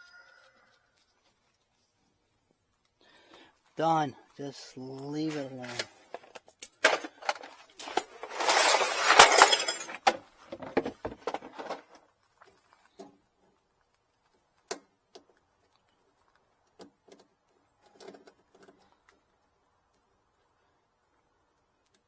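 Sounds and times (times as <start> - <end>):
scraping rustle: 5.2 - 13.2.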